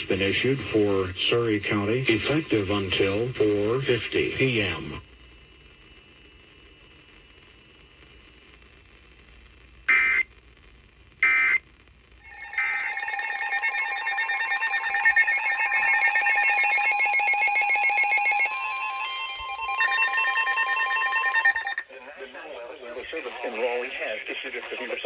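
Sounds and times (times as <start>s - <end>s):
digital data bursts: 9.9s - 10.3s.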